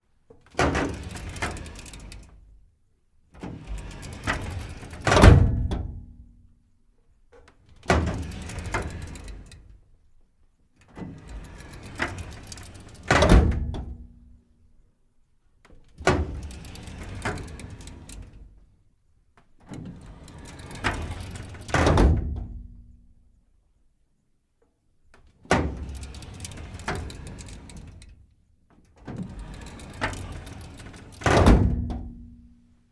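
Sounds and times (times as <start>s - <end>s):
metal drawer rolling and scraping: 0.8s - 2.3s, 3.4s - 5.8s, 8.1s - 9.5s, 11.1s - 13.7s, 16.2s - 18.4s, 19.8s - 21.8s, 25.7s - 28.0s, 29.1s - 32.2s
drawer slammed shut with bang: 31.3s - 32.0s.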